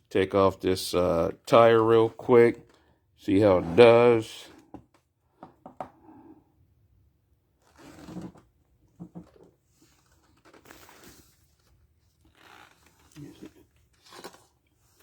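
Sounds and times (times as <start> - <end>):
faint rustling handling noises: 9.0 - 15.0.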